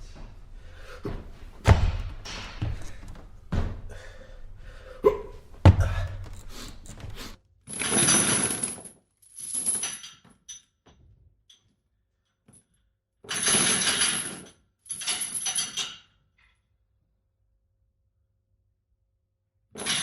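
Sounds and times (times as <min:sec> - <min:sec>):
gym equipment knocks and thuds: 0:00.1 - 0:07.4.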